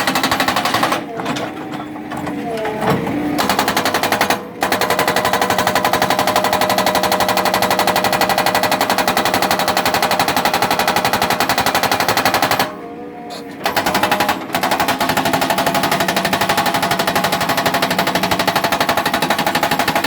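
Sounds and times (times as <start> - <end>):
hydraulic rock breaker pounding rock: 13.5 - 20.0.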